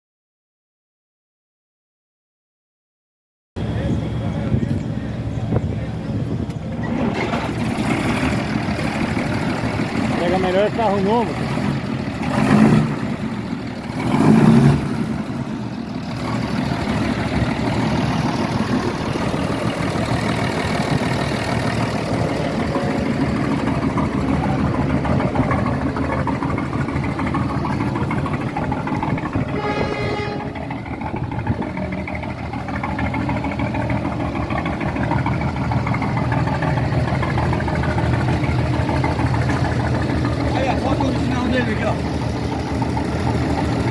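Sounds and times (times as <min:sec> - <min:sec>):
truck engine rumbling: 0:03.6 - 0:43.9.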